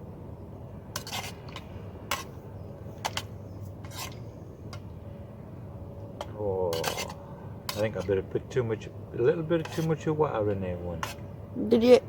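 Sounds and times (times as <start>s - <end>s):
low background rumble: 0.0s - 12.0s
metal utensil scraping in a pot: 1.0s - 2.3s, 3.0s - 4.2s, 6.7s - 8.2s, 9.6s - 10.1s, 11.0s - 11.3s.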